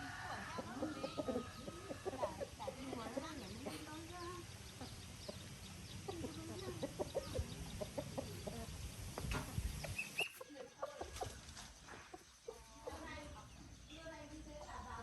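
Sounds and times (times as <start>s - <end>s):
chickens clucking: 0.0s - 14.0s.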